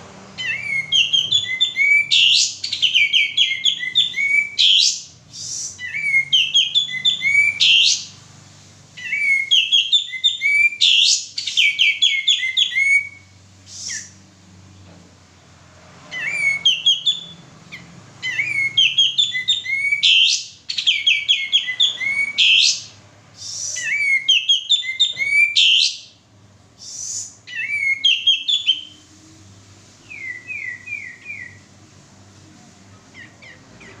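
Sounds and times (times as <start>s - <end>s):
bulbul singing: 0.3s - 8.2s, 9.0s - 14.3s, 16.1s - 29.1s, 30.0s - 31.8s.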